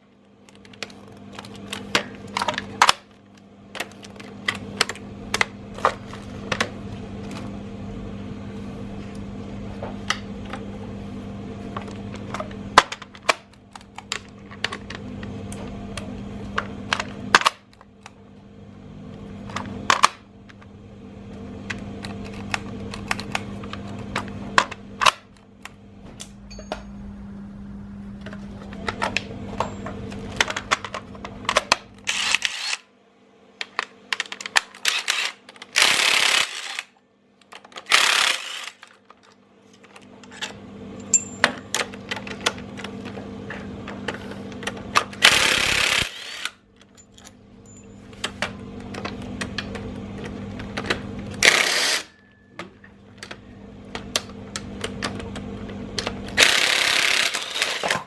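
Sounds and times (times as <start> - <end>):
metallic clinks of tools: 26.5 - 26.9, 41.0 - 41.5.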